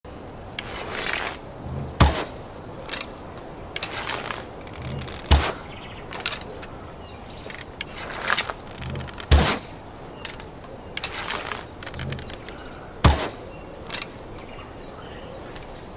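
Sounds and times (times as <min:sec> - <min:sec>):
arrow shot with thump and snap: 0:02.0 - 0:03.1, 0:03.8 - 0:05.7, 0:07.9 - 0:09.7, 0:13.0 - 0:14.1
small clicks: 0:02.8 - 0:06.8, 0:10.2 - 0:12.6, 0:15.5 - 0:15.8.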